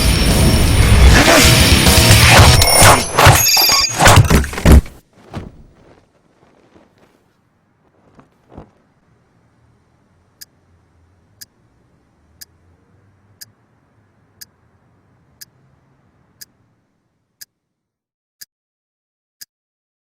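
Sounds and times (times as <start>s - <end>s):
faint low hum: 5.4s - 17.4s.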